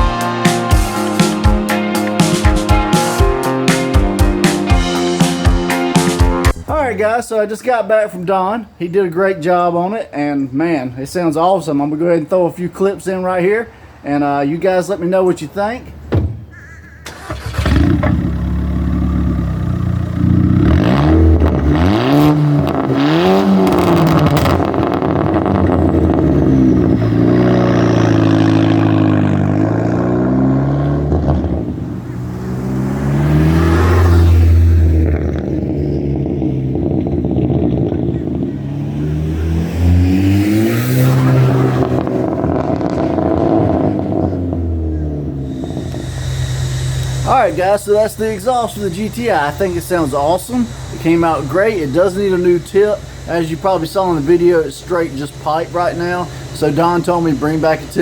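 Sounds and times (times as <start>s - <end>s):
car engine revving: 0.0s - 6.7s, 17.1s - 58.0s
exhaust crackles and pops: 17.0s - 58.0s.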